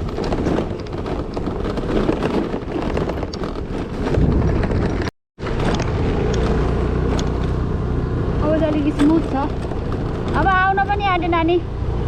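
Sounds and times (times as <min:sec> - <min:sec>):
knocks and rattles from bumps: 0:00.0 - 0:05.1, 0:07.1 - 0:11.4
wind buffeting microphone: 0:00.0 - 0:06.0
motor scooter engine: 0:05.4 - 0:11.9.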